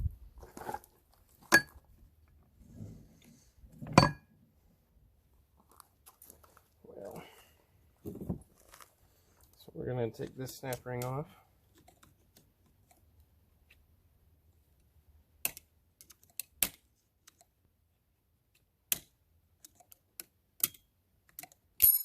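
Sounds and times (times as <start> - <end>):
metal clicks and taps: 18.5 - 21.6.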